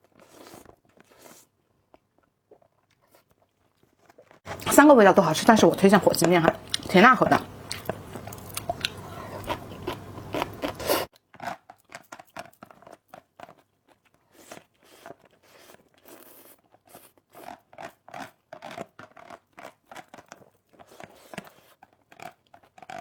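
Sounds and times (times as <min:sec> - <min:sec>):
person chewing noodles: 0:00.1 - 0:11.6.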